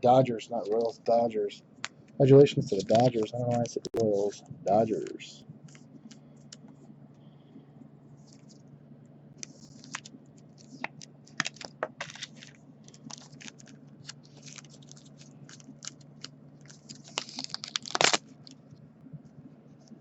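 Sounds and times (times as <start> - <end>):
low steady hum: 0.0 - 20.0
cards rustling and clicking: 0.5 - 1.2, 1.8 - 6.8, 8.2 - 8.7, 9.4 - 18.6.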